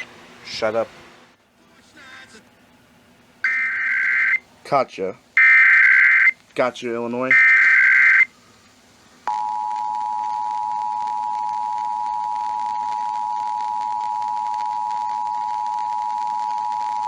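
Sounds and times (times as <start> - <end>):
steady two-tone alert signal: 9.3 - 17.0.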